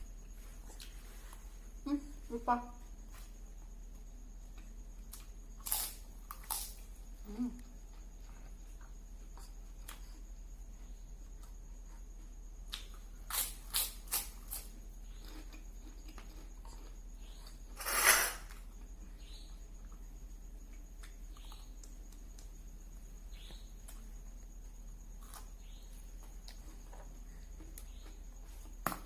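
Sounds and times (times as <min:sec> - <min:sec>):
crisp eating crunches: 0:04.5 - 0:10.3, 0:12.7 - 0:22.6.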